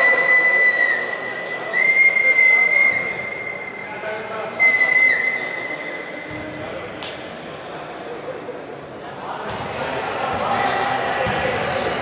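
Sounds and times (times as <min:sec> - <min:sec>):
referee's whistle blasts: 0:00.0 - 0:03.9, 0:04.5 - 0:06.3.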